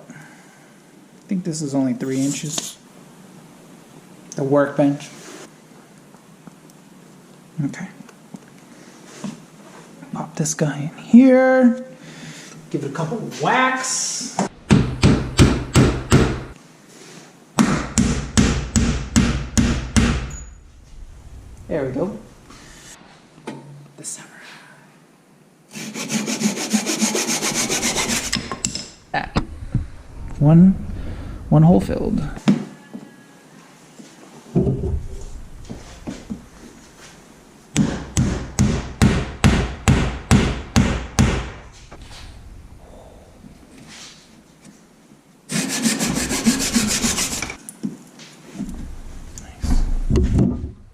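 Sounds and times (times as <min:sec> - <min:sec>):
hammer striking wooden dowel: 0:14.7 - 0:16.6, 0:17.6 - 0:20.4, 0:37.8 - 0:41.6.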